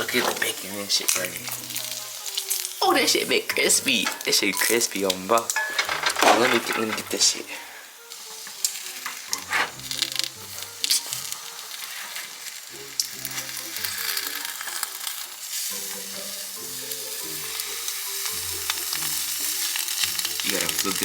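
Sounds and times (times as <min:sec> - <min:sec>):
utensil clicking against pan: 0:00.0 - 0:02.8, 0:17.5 - 0:21.0
bacon sizzling in a pan: 0:00.0 - 0:05.6, 0:07.2 - 0:21.0.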